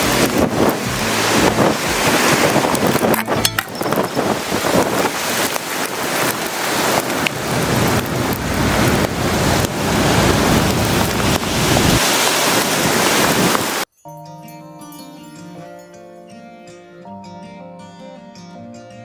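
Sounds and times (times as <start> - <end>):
wind buffeting microphone: 0.0 - 13.8
heavy rain: 0.0 - 13.9.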